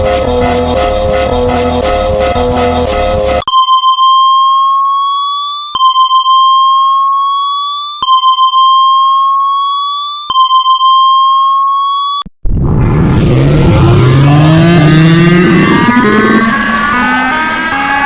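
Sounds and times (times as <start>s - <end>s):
electronic music: 0.0s - 3.5s, 12.5s - 18.0s
stuttering alarm beeps: 3.4s - 12.3s
rising buzzy alarm tone: 11.4s - 18.0s.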